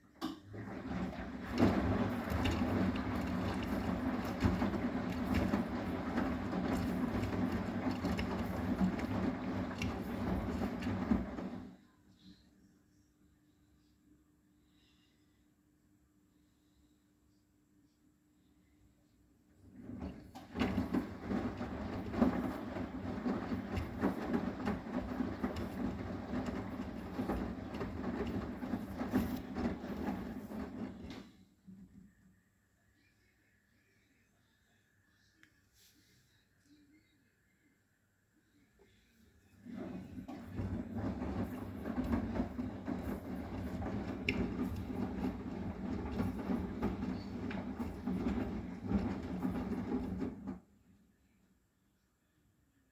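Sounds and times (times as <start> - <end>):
washing machine drum tumbling laundry: 0.2 - 11.8, 19.6 - 31.4, 39.6 - 50.7.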